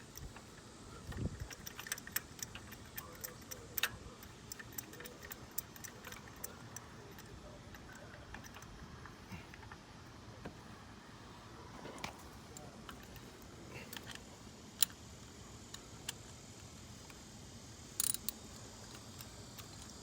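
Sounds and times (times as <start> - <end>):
hand tools clicking on metal: 0.0 - 9.8, 18.0 - 20.0.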